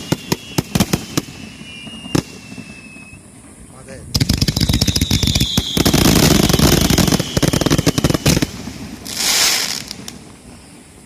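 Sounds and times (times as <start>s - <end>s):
fireworks launch bangs and bursts: 0.0s - 11.0s.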